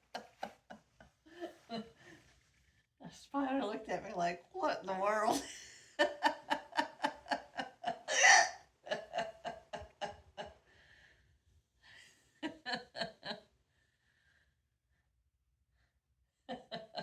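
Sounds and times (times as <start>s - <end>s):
woman laughing in breathy bursts: 5.4s - 10.5s.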